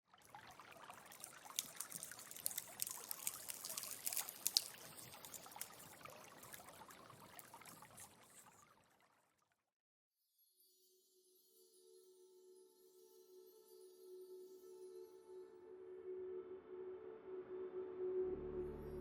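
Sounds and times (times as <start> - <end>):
liquid trickling: 0.1 - 9.4.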